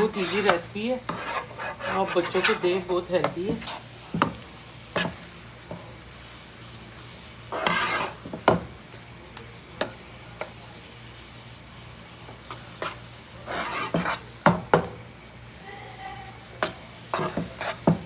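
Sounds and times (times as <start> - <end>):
spoon scraping pan: 0.0 - 5.9, 7.4 - 8.7, 12.3 - 14.9, 16.4 - 18.0.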